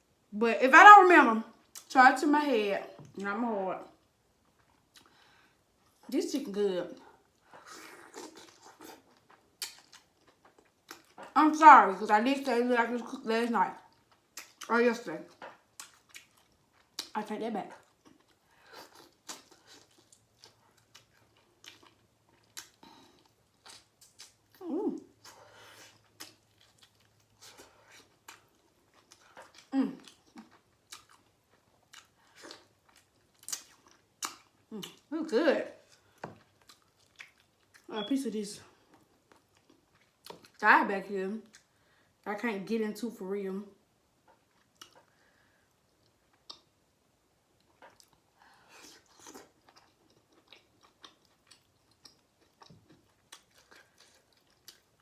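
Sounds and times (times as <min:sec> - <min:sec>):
chewing and wet mouth smacks: 0:07.4 - 0:11.4, 0:13.9 - 0:14.7, 0:15.3 - 0:35.1, 0:35.9 - 0:37.9, 0:38.9 - 0:40.6, 0:44.3 - 0:45.2, 0:45.8 - 0:46.7, 0:47.6 - 0:55.0
wet mouth clicks and smacks: 0:46.4 - 0:46.7.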